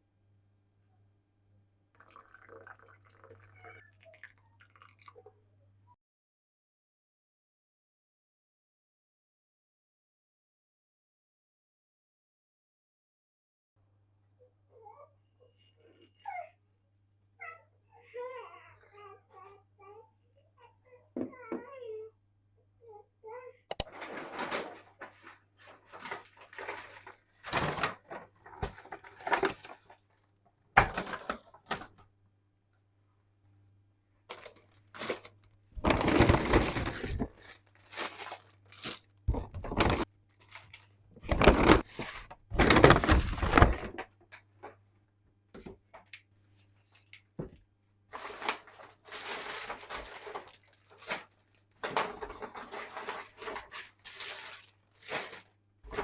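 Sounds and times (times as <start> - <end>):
objects knocking and thunking: 30.8 - 32.1, 39.3 - 40.1, 41.2 - 44.9, 51.8 - 53.9
rustling: 48.1 - 56.0.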